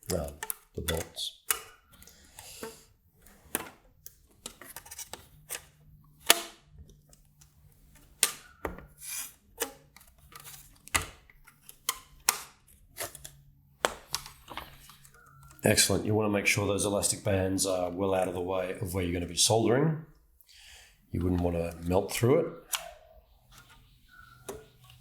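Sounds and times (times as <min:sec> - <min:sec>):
small hardware clicks and knocks: 0:00.0 - 0:02.7.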